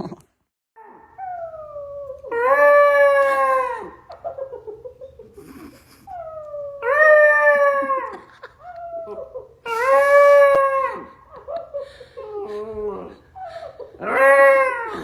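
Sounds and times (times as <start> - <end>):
dog howling: 0.8 - 4.2, 6.2 - 11.3, 14.0 - 15.0
dog whining: 0.8 - 4.2, 12.2 - 15.0.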